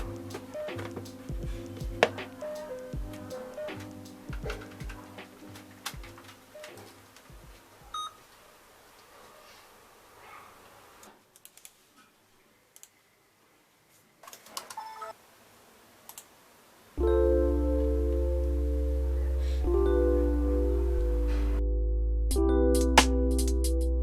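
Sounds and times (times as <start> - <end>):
keyboard chords with deep bass: 0.0 - 6.2, 17.0 - 24.0.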